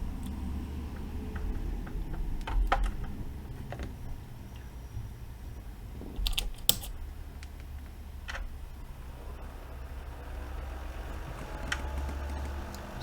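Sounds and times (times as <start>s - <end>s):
low steady hum: 0.0s - 13.0s
sharp switch clicks: 6.2s - 7.7s.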